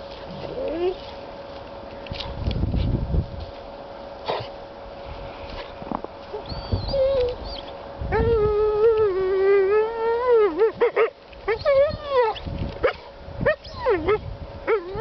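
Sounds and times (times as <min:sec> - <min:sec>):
dog whining and yelping: 0:06.4 - 0:15.0.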